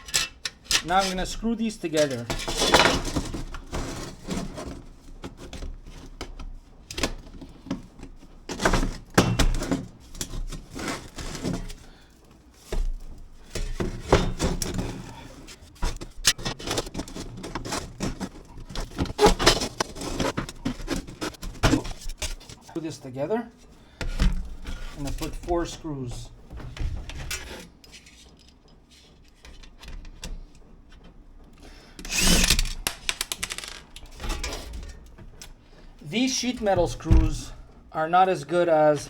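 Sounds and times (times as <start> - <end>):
metal pipe sections clanking: 0.0 - 3.2, 32.0 - 37.9.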